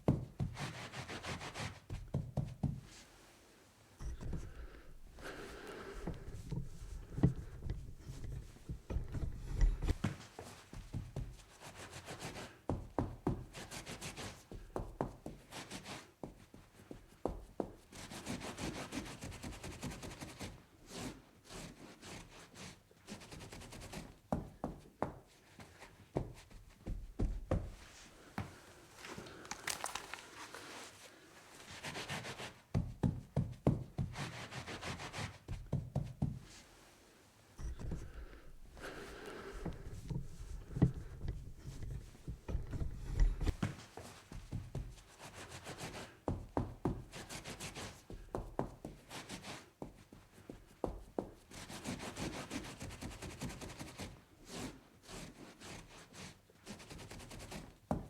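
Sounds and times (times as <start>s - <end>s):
cloth scrubbing a tabletop: 0.4s - 2.0s.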